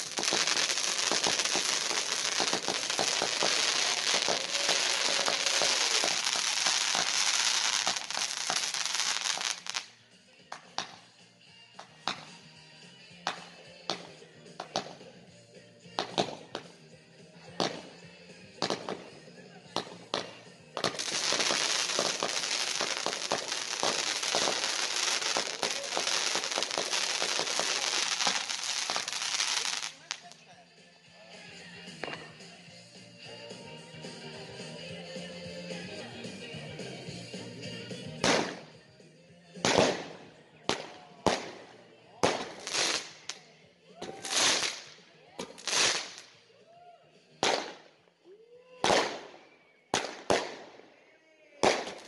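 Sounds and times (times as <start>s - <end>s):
scattered firework pops: 0.0s - 9.9s, 10.5s - 11.1s, 11.8s - 12.4s, 13.2s - 15.0s, 16.0s - 16.7s, 17.6s - 18.0s, 18.6s - 19.2s, 19.8s - 30.2s, 32.0s - 32.3s, 38.2s - 38.7s, 39.6s - 43.4s, 44.0s - 46.3s, 47.4s - 47.9s, 48.8s - 50.8s, 51.6s - 52.0s
fireworks crackling and banging: 0.0s - 11.1s, 11.8s - 12.4s, 13.3s - 15.1s, 15.9s - 16.8s, 17.5s - 30.4s, 31.8s - 32.5s, 37.6s - 38.8s, 39.5s - 46.4s, 47.4s - 47.9s, 48.8s - 50.9s, 51.6s - 52.0s.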